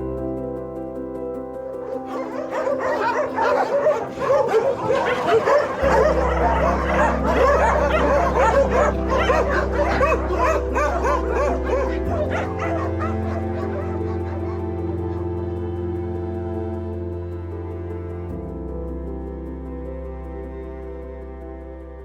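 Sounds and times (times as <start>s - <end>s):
background music with sustained chords: 0.0s - 22.0s
many dogs barking: 1.8s - 15.3s.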